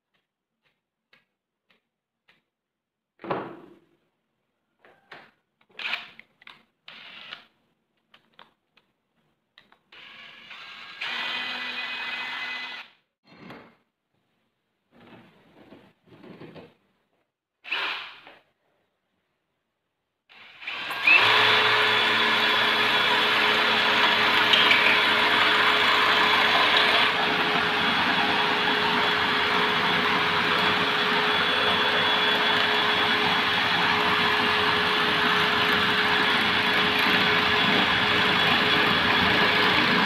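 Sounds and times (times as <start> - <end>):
power tool motor whining: 20.3 - 40.0.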